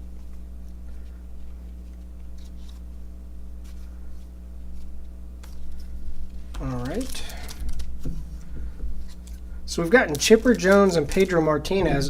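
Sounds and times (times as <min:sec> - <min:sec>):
low electrical hum: 0:00.0 - 0:12.0
cards rustling and clicking: 0:00.2 - 0:03.0, 0:03.6 - 0:12.0.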